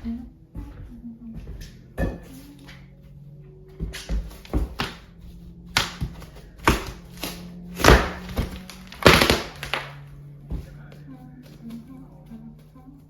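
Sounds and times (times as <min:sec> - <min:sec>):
knocks and thuds on wood: 0:03.8 - 0:10.8.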